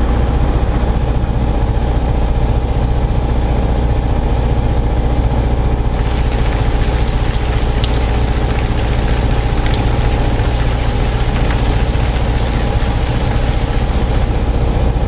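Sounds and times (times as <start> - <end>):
rain-like hiss: 5.8 - 14.7.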